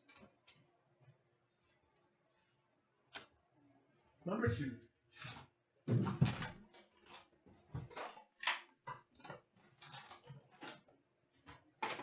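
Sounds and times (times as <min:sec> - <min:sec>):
rustling of cardboard and foil: 0:09.5 - 0:10.9.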